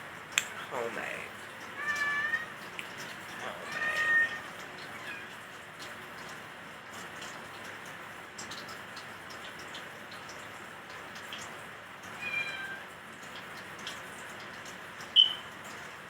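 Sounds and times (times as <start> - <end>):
food frying in oil: 0.0 - 16.0
cat meowing: 1.8 - 2.6, 3.3 - 5.4, 12.2 - 12.8.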